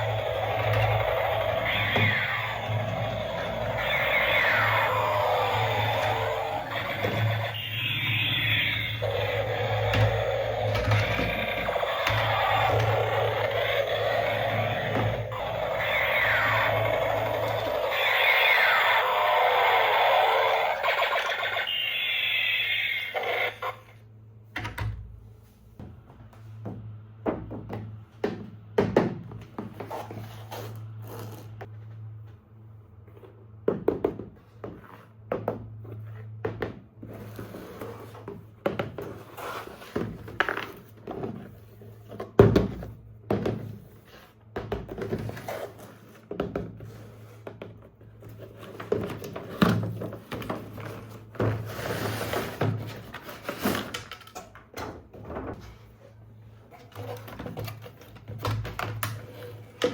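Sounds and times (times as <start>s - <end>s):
steady low hum: 0.0s - 24.5s.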